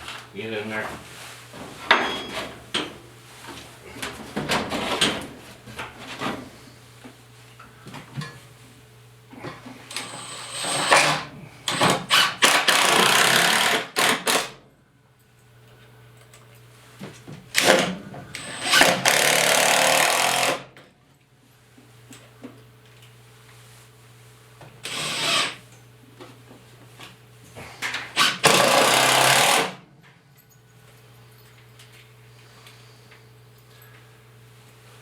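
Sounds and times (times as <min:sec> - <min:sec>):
power drill driving screws: 0:09.9 - 0:14.6, 0:18.4 - 0:20.7, 0:24.8 - 0:25.6, 0:28.1 - 0:29.8.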